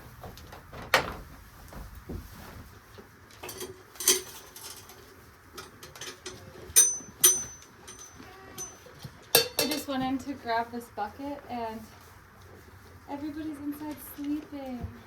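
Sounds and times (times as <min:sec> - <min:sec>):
high metallic ring: 0:06.8 - 0:09.8
hard objects knocking and clinking: 0:09.4 - 0:09.9.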